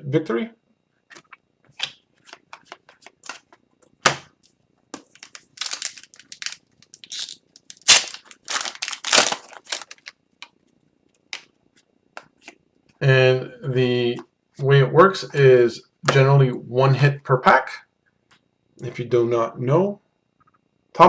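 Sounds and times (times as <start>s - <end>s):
cards being handled: 5.0s - 10.1s
wrappers crinkling: 5.0s - 10.2s
card packs tearing open: 5.1s - 10.1s.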